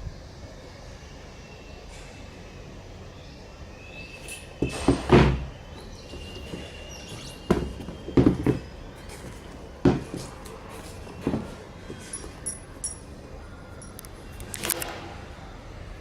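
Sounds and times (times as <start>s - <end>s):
handling thumps and knocks: 4.6s - 13.1s.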